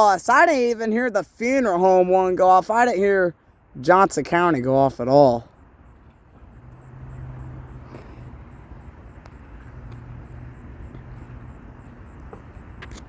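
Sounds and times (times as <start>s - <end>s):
outdoor background noise: 0.0s - 13.0s
vehicle engine humming: 5.5s - 13.0s.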